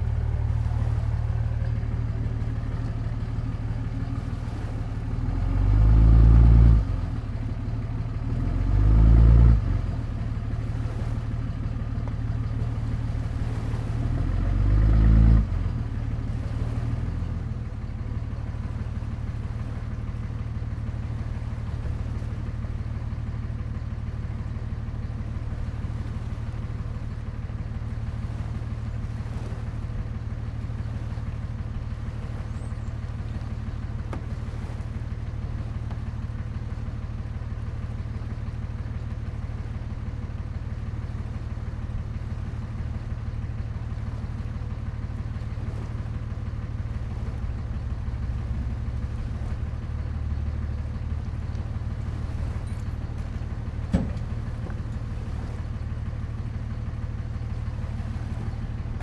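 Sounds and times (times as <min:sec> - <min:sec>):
engine humming and revving: 0:00.0 - 0:17.6, 0:45.0 - 0:56.6, 0:57.5 - 0:59.0.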